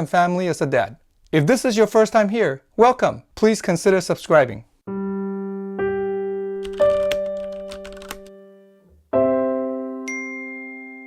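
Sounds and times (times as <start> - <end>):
piano-like keyboard chords: 4.9 - 11.0.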